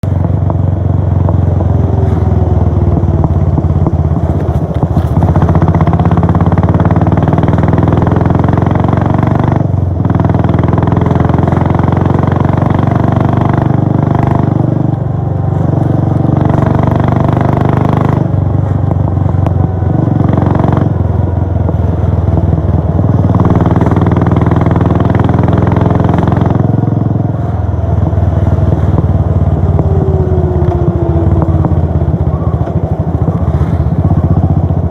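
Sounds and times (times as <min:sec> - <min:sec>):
motorcycle exhaust while riding: 0:00.0 - 0:34.9.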